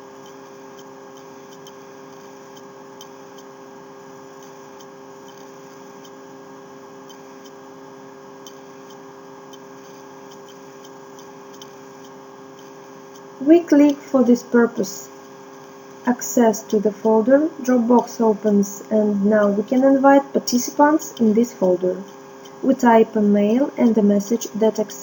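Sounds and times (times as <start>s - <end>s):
electrical hum: 3.6s - 25.0s.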